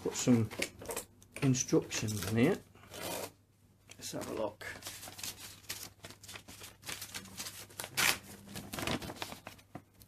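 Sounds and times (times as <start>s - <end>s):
paper rustling and crinkling: 4.0s - 10.0s.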